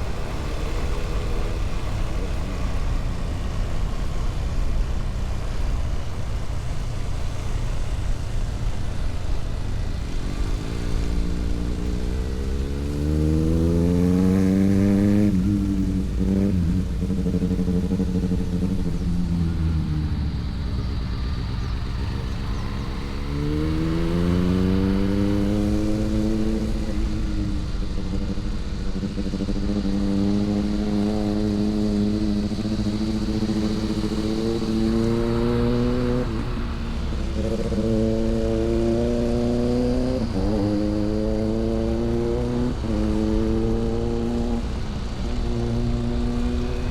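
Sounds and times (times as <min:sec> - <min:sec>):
motorcycle engine: 0:00.0 - 0:46.9
road and wind noise: 0:00.0 - 0:46.9.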